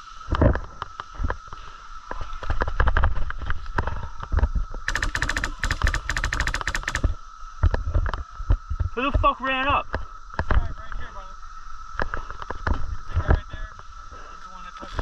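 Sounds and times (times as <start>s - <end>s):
airsoft gun full-auto rattle: 4.9s - 7.2s.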